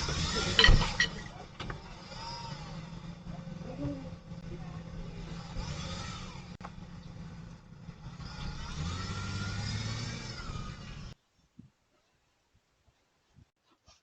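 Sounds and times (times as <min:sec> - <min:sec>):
vehicle engine running: 0:00.0 - 0:11.2.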